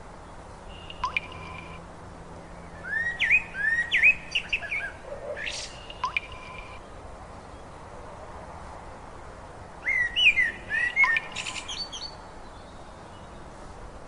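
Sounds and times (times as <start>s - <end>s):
bird chirping: 0.7s - 1.8s, 2.4s - 7.7s, 9.8s - 13.5s.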